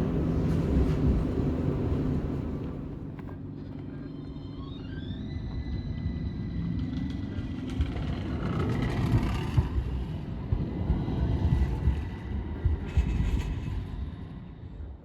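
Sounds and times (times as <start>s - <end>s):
tram motor whine: 0.0s - 3.2s
wheels rumbling on rails: 0.0s - 4.2s, 5.5s - 15.0s.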